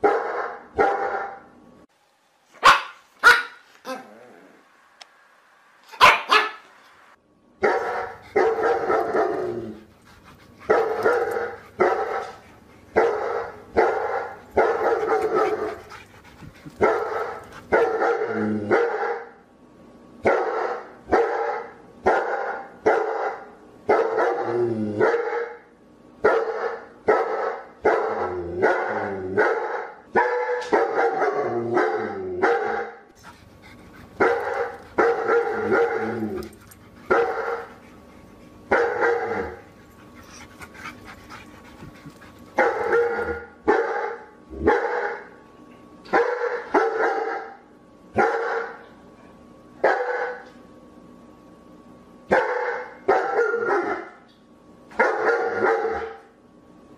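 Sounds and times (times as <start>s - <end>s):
dog barking: 0.0s - 1.4s, 2.6s - 4.0s, 5.9s - 6.7s, 7.6s - 9.6s, 10.7s - 12.4s, 13.0s - 15.8s, 16.8s - 19.4s, 20.2s - 25.6s, 26.2s - 33.0s, 34.2s - 36.2s, 37.1s - 37.7s, 38.7s - 39.6s, 42.6s - 45.3s, 46.1s - 47.6s, 48.2s - 48.8s, 49.8s - 50.5s, 52.3s - 54.2s, 55.0s - 56.3s.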